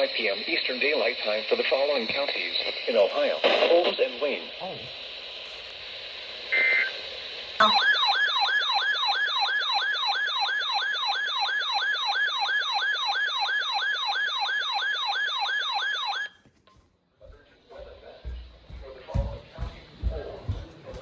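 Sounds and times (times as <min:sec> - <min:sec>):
electronic yelp alert tone: 0:07.6 - 0:08.4.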